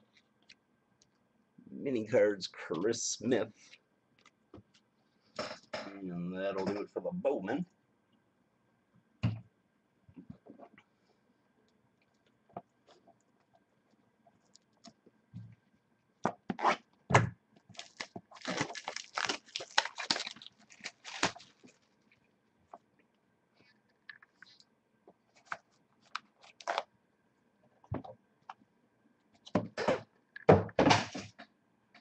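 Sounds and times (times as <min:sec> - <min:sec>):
plastic wrapper tearing: 0:17.7 - 0:22.0, 0:26.0 - 0:26.8.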